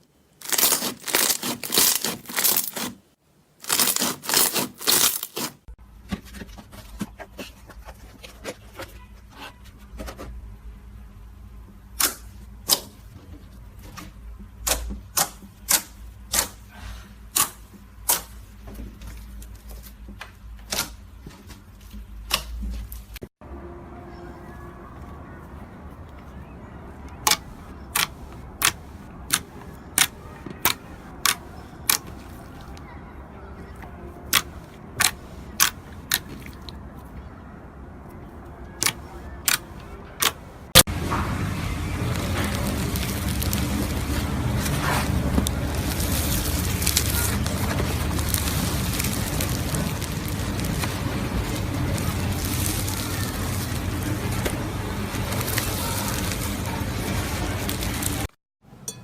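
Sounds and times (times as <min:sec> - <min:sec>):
slime popping: 0:00.4 - 0:02.9, 0:03.6 - 0:05.5.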